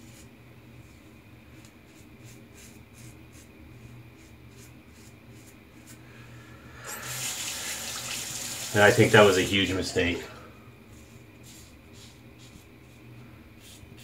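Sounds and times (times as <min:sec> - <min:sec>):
water tap running: 0:06.8 - 0:09.9.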